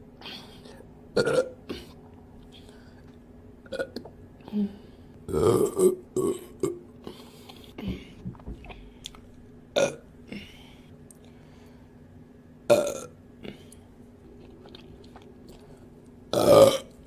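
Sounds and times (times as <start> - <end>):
woman burping: 1.2 - 2.0, 5.3 - 6.8, 9.8 - 10.0, 12.7 - 13.6, 16.3 - 16.9
faint mouth sounds: 13.4 - 15.9.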